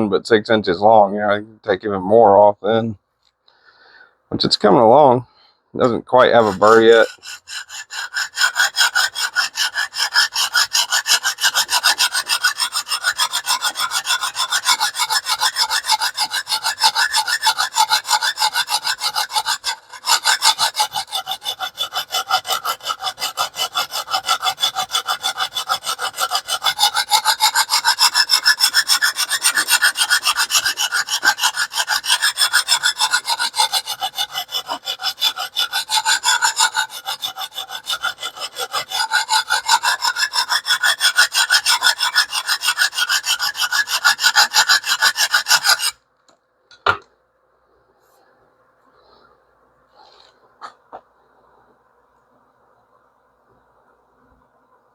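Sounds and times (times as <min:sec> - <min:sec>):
sharpening stone scraping blade: 0:06.4 - 0:46.0.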